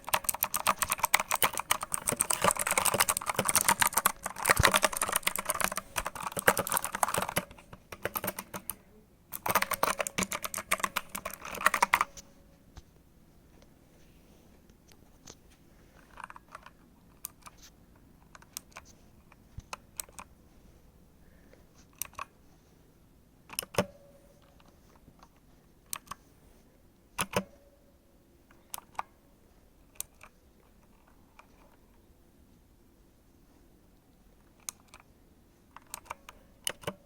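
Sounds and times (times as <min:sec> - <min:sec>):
clicky keyboard key presses: 0:00.0 - 0:12.3, 0:27.2 - 0:27.6, 0:35.8 - 0:37.0.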